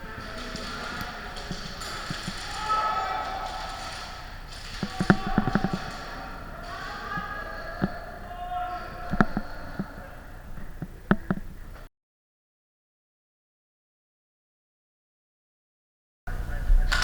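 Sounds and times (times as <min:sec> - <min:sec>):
sharp knocks and cracks: 0:00.0 - 0:08.1
faint voices: 0:00.0 - 0:11.9.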